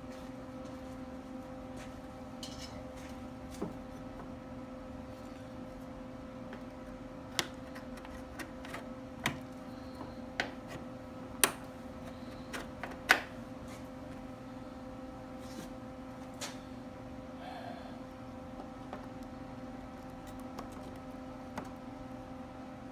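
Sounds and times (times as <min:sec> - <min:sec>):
steady electrical hum: 0:00.0 - 0:22.9.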